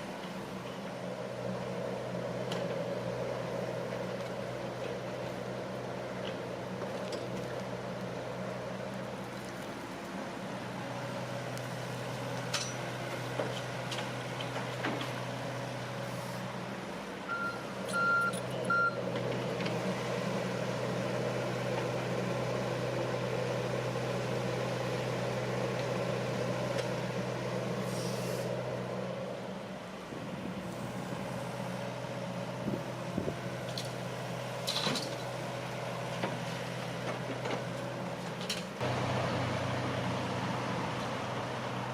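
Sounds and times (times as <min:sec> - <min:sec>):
diesel machinery running: 0:00.0 - 0:41.9
hisses: 0:27.8 - 0:28.6.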